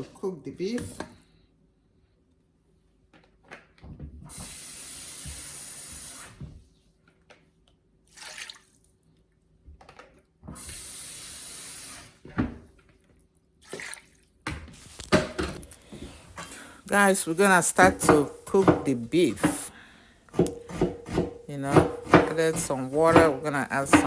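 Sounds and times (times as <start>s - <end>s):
kitchen tap running: 14.8s - 24.0s
pot or dish knocking: 17.8s - 19.7s, 20.4s - 24.0s.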